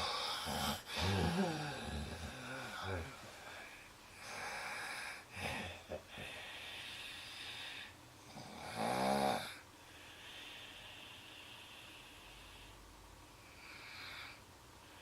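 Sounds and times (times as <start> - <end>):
person snoring: 0.0 - 3.2, 8.3 - 9.6.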